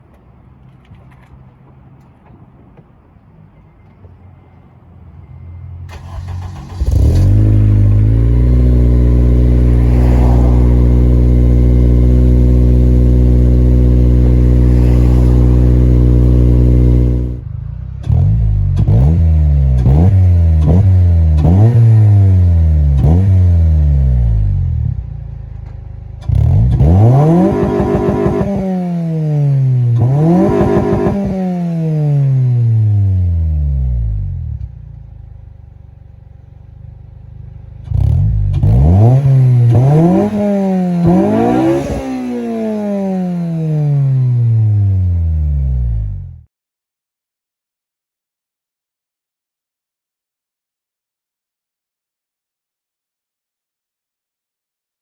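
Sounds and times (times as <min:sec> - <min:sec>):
car engine cold start: 0:05.8 - 0:08.5
car engine revving: 0:05.9 - 0:17.4, 0:18.0 - 0:25.0, 0:26.2 - 0:33.1, 0:37.8 - 0:46.2.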